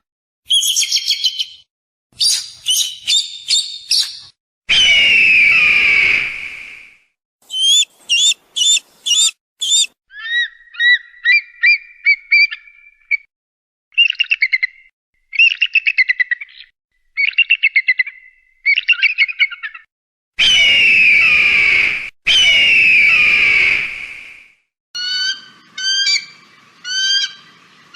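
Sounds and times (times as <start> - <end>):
chirping whistles: 0.5 - 13.3, 20.4 - 24.4
eagle high calls: 2.2 - 4.2, 7.4 - 11.8
eagle screaming: 7.5 - 10.9.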